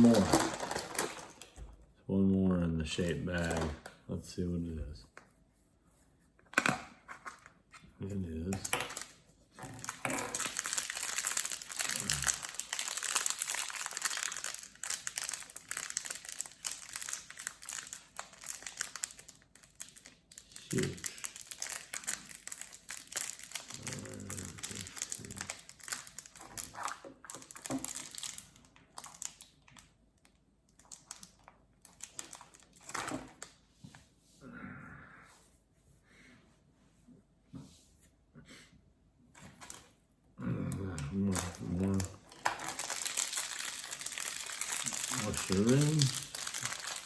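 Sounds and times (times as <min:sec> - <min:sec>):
plastic bag crinkling: 0:00.0 - 0:01.6, 0:08.5 - 0:33.6, 0:41.1 - 0:47.0.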